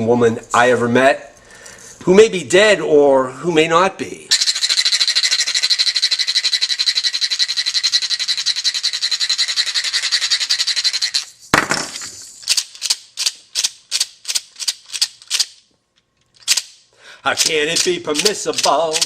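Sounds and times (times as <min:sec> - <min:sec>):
shaken rattle: 0:04.3 - 0:15.6, 0:17.3 - 0:19.0.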